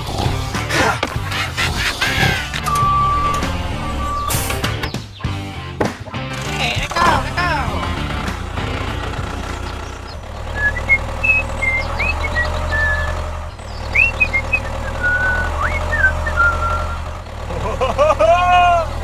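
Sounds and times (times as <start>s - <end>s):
low motor hum: 0.0s - 5.7s, 6.4s - 19.0s
high chirping notes: 1.2s - 5.4s, 6.9s - 17.2s.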